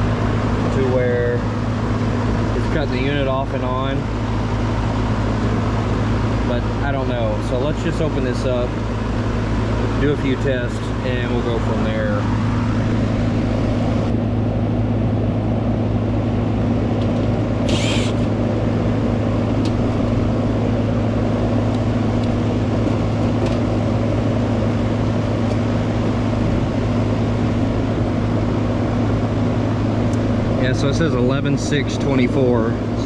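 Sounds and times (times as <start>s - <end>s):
air conditioner compressor hum: 0.0s - 33.0s
condenser fan whoosh: 0.0s - 33.0s
short high hiss: 17.7s - 18.3s.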